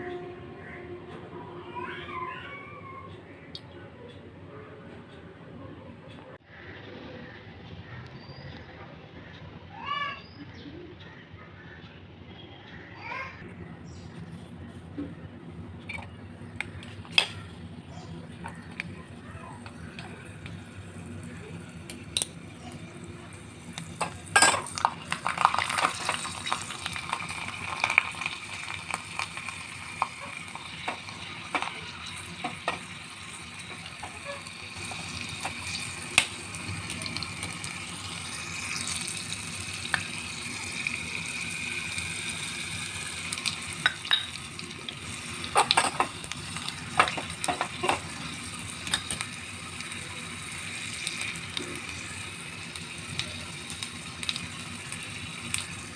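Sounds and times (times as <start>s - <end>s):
food sizzling in a pan: 16.6s - 55.9s
spoon scraping a pan: 23.7s - 40.1s, 43.0s - 49.2s.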